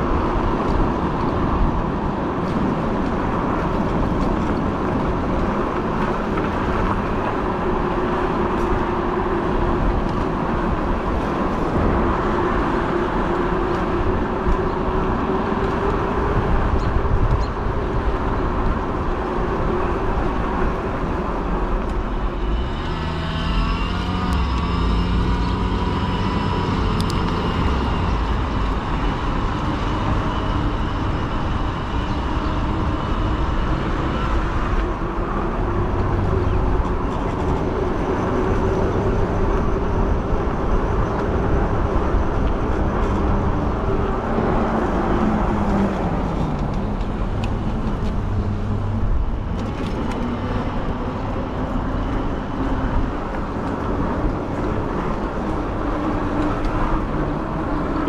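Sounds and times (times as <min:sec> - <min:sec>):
wind and road noise: 0:00.0 - 0:58.0
constant motor hum: 0:02.4 - 0:58.0
high whining tones: 0:19.7 - 0:36.0.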